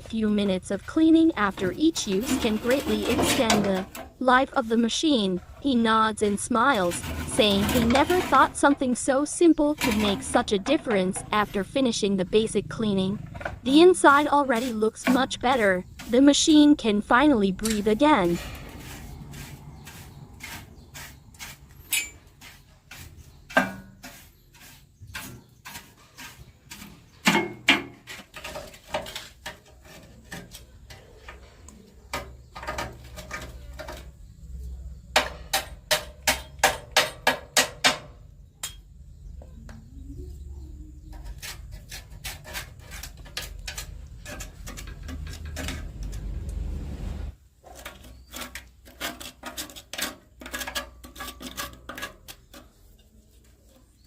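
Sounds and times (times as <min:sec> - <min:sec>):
hand tools knocking on metal: 0:01.3 - 0:04.2, 0:05.8 - 0:18.7, 0:35.1 - 0:38.9.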